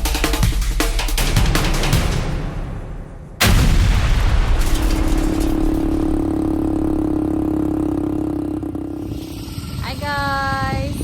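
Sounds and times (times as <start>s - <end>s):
sudden loud blast: 2.2s - 8.4s
atv engine humming: 5.3s - 11.0s.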